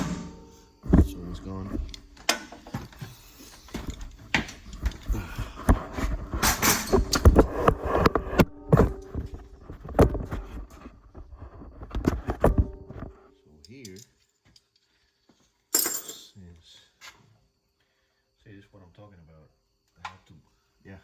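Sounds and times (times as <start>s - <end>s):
tools and metal parts clanking: 0.0s - 10.3s, 12.1s - 14.6s, 15.7s - 16.3s
faint steady hum: 0.0s - 21.0s.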